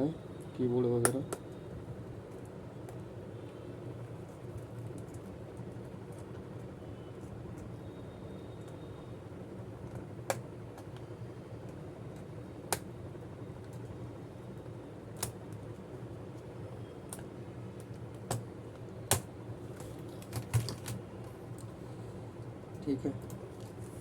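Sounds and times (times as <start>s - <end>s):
sharp plastic clicks: 19.1s - 21.0s.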